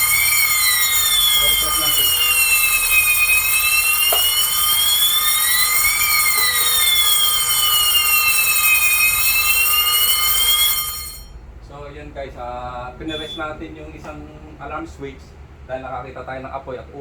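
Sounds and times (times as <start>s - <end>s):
electronic alarm wail: 0.0s - 11.3s, 13.1s - 13.5s
high ringing tones: 0.0s - 11.6s, 13.0s - 13.6s.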